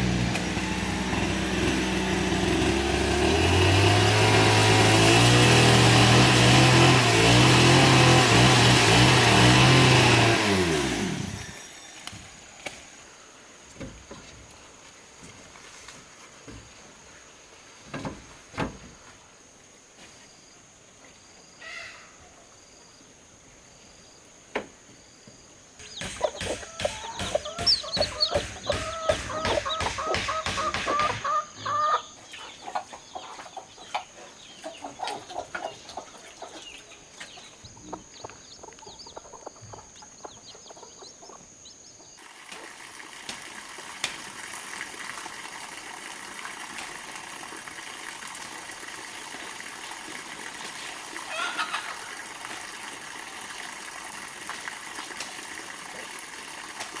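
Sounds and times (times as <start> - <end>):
chickens clucking: 25.8 - 41.6, 51.0 - 52.6.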